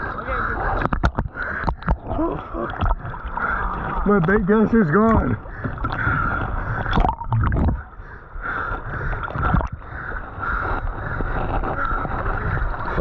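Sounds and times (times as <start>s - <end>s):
river water sloshing and splashing: 0.0s - 13.0s.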